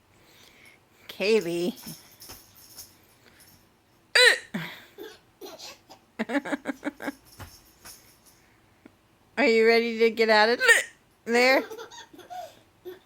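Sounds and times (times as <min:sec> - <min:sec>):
woman hiccupping: 0:04.2 - 0:04.8
baby laughing: 0:05.0 - 0:06.1, 0:11.6 - 0:13.0.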